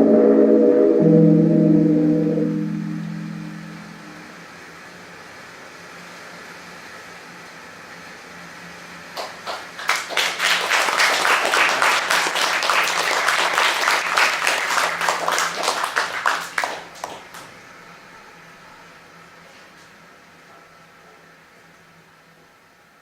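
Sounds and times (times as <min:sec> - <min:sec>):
audience applauding: 0:09.2 - 0:17.5.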